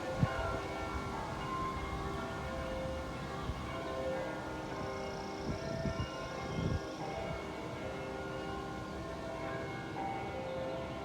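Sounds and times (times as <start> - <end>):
wind buffeting microphone: 0.0 - 7.6
church bells ringing: 0.0 - 11.0.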